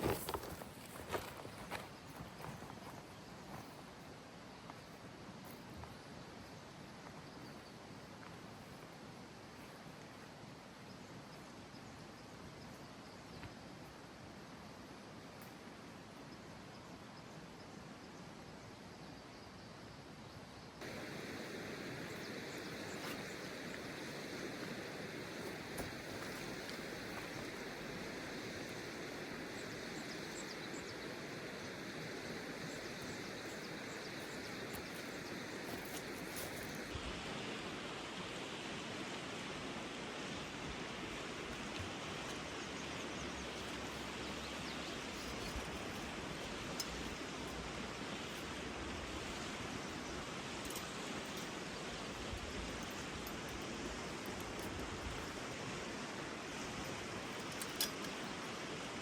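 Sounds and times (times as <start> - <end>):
stream water flowing: 20.8 - 59.0.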